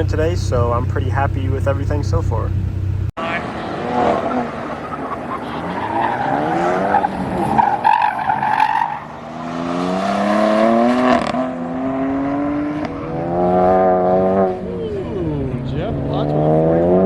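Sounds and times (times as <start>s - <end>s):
car engine accelerating: 0.0s - 17.0s
tire squeal: 3.2s - 11.6s.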